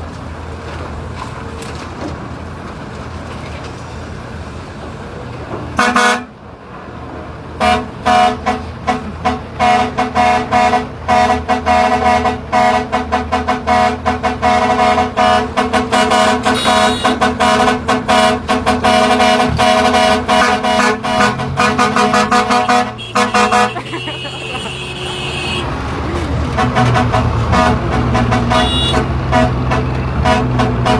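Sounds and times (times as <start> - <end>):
vehicle horn honking rapidly: 5.8 - 6.3, 7.6 - 25.7, 26.6 - 30.9
low engine hum: 14.8 - 30.9.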